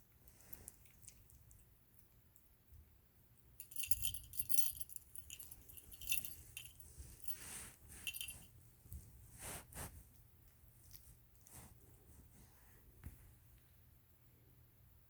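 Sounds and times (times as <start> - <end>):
metallic jingling and rattling: 3.6 - 7.4, 8.0 - 8.5.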